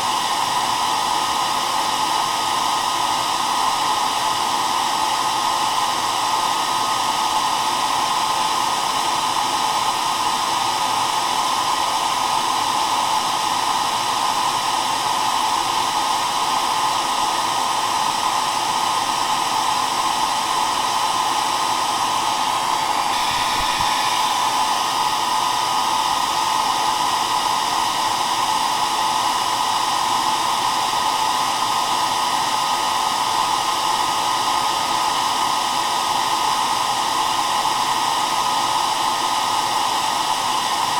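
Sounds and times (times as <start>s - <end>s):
hair dryer blowing: 0.0s - 40.9s.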